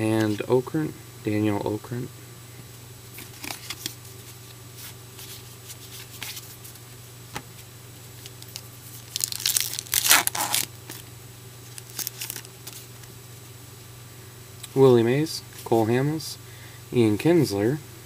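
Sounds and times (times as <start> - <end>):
cards clicking and rustling: 3.2 - 4.0, 4.8 - 6.6, 8.2 - 11.0, 11.7 - 13.1
wrapper crinkling and tearing: 8.2 - 11.1, 11.7 - 13.1.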